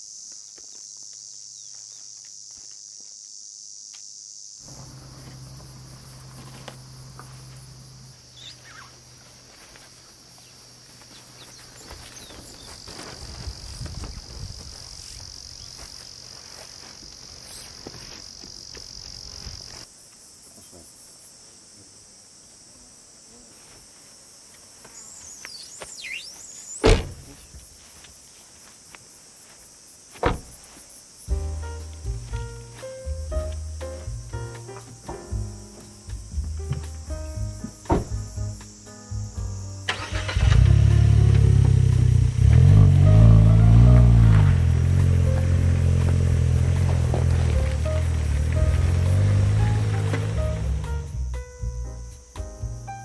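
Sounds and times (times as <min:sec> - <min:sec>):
insects chirring: 0:00.0 - 0:53.0
loud thunk: 0:26.8 - 0:27.4, 0:30.2 - 0:30.6, 0:37.6 - 0:38.4.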